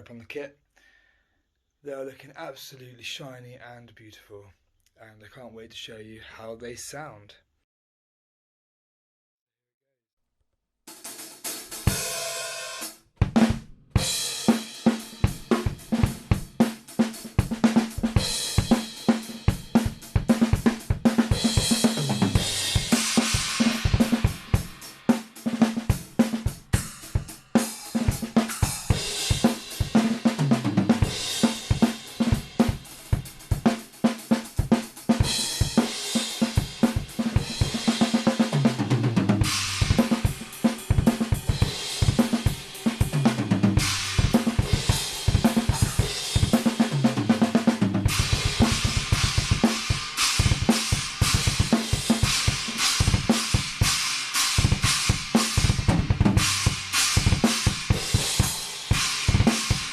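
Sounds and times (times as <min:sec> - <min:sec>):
bass drum: 0:13.2 - 0:14.2, 0:15.1 - 0:16.6, 0:17.3 - 0:25.0, 0:25.7 - 0:33.7, 0:34.5 - 0:54.0, 0:54.6 - 0:59.9
crash and ride cymbals: 0:14.0 - 0:38.8, 0:39.4 - 0:59.9
snare drum: 0:14.4 - 0:59.9
hi-hats: 0:44.0 - 0:46.6.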